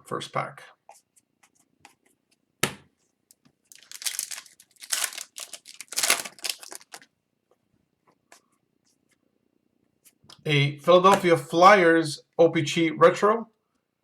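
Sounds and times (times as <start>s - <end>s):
foil wrapper tearing and crinkling: 3.7s - 7.1s.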